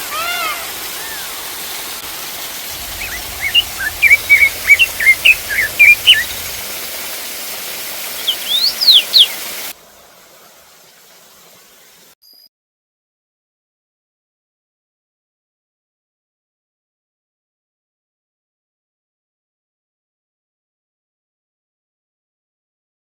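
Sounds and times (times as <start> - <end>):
waterfall rushing: 0.0 - 9.8
faint hiss: 0.1 - 12.2
bird chirping: 2.8 - 6.9, 8.1 - 9.4.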